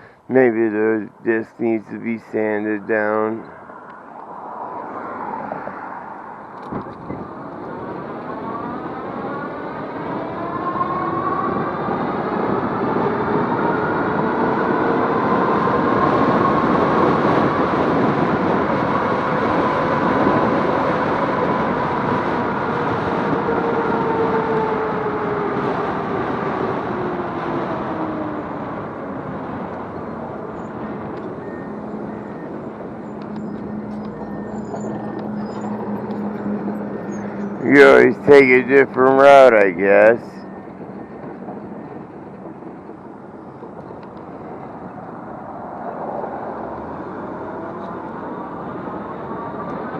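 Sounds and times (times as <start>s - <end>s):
wind noise: 0.8s - 49.9s
e-bike motor whine: 26.7s - 42.2s.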